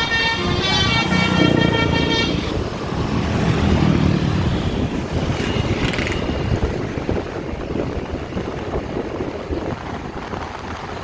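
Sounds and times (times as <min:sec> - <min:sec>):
bus multi-tone horn blast: 0:00.0 - 0:02.6
bus engine rumble: 0:00.0 - 0:11.0
road traffic: 0:00.0 - 0:11.0.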